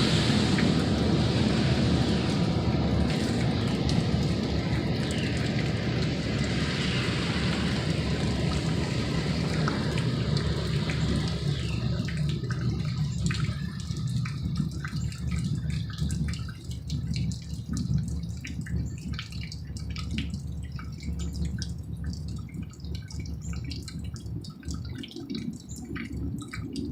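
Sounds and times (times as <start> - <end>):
deep rumble from the sky: 0.0 - 26.9.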